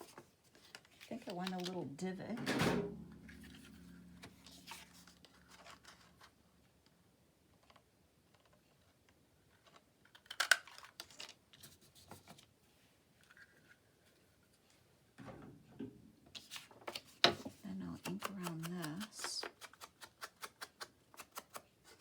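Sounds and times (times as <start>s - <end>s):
paper rustling: 0.0s - 1.8s, 16.4s - 19.8s
scissors snipping paper: 18.0s - 22.0s.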